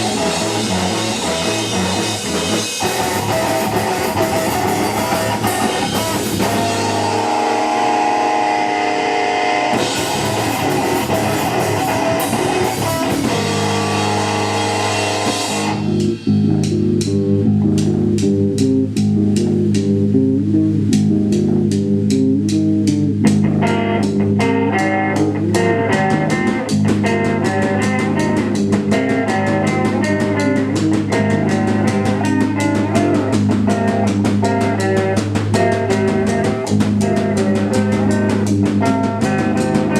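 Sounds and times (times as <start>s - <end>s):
cymbals washing: 0.0s - 16.2s
bass guitar: 0.0s - 39.9s
drum kit: 0.0s - 39.9s
electric guitars: 0.0s - 39.9s.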